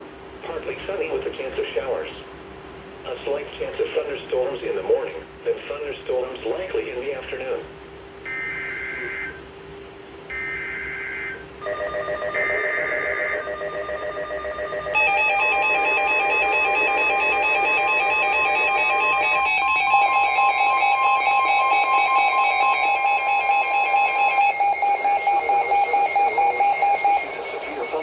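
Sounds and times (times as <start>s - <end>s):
alert receiver alarm beeping: 10.3s - 28.0s
steady multi-tone alert sound: 10.3s - 28.0s
screeching digital data bursts: 15.0s - 28.0s.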